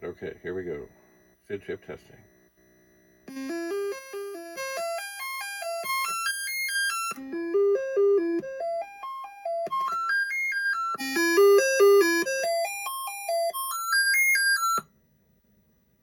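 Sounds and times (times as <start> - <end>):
synthesized chip tune: 3.3 - 14.0.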